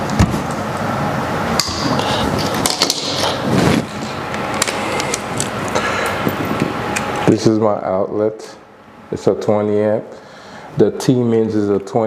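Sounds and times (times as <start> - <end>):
wire clicking and scraping: 1.6 - 7.3.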